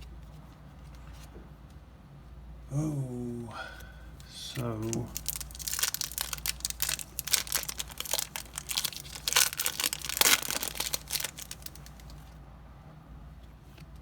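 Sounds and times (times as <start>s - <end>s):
wrapper tearing and crinkling: 4.8s - 12.3s.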